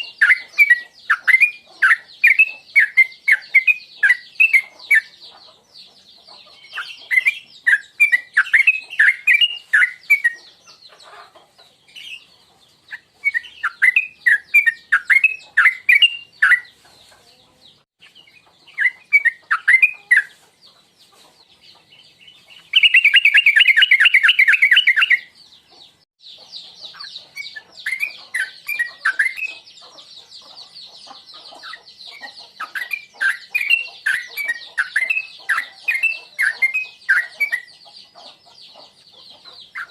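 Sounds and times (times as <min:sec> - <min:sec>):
bird singing bubbling chirps: 0:22.6 - 0:25.4.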